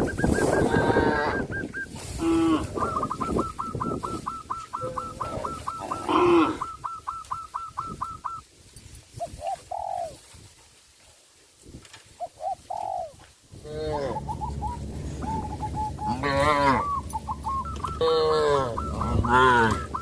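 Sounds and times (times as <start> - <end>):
doves cooing: 0.0 - 8.5, 9.2 - 10.4, 12.2 - 20.0
poultry calls: 0.0 - 8.5, 12.2 - 20.0.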